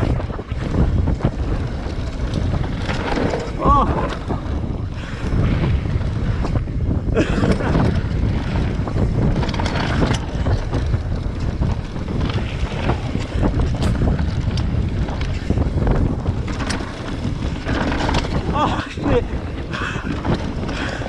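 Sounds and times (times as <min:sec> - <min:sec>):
bike clicking and rattling: 0:00.0 - 0:21.0
wind buffeting a microphone: 0:00.0 - 0:21.0.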